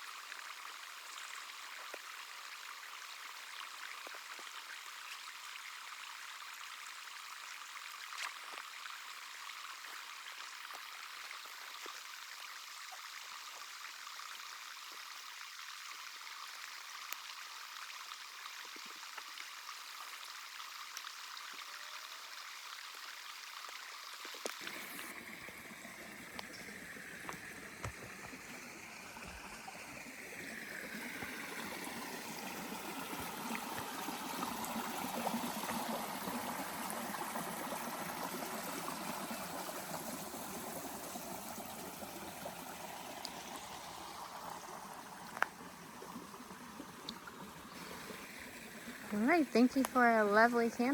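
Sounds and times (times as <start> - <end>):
small ticks: 23.5 - 24.8
water rushing: 23.9 - 50.9.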